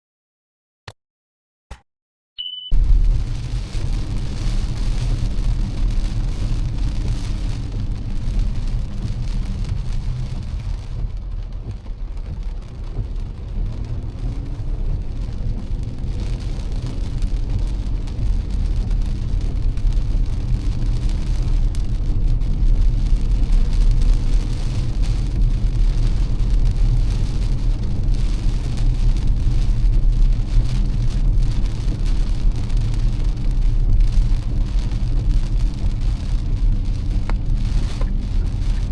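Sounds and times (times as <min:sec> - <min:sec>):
rain pattering on a car: 0:02.7 - 0:38.9
road and engine rumble: 0:02.8 - 0:38.9.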